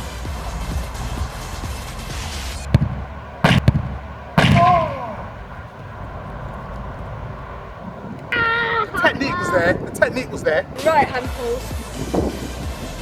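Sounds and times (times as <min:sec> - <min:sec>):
football kicked with a smack: 0:02.7 - 0:05.2
heavy thumps of ball landing: 0:02.7 - 0:07.2
brief falling cry: 0:04.4 - 0:05.3, 0:08.3 - 0:09.7.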